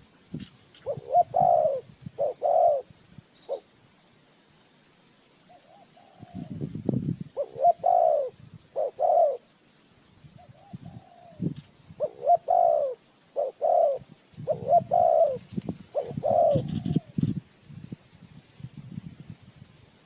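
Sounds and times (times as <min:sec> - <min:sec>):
dove cooing: 0:00.8 - 0:03.7, 0:05.5 - 0:06.7, 0:07.3 - 0:09.5, 0:10.4 - 0:17.4.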